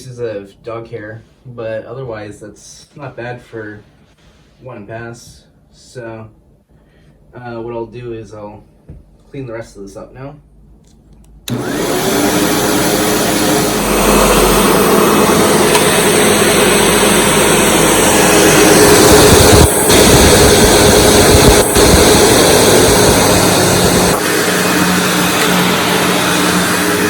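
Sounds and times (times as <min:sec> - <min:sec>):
upright vacuum cleaner running: 0:11.5 - 0:27.0.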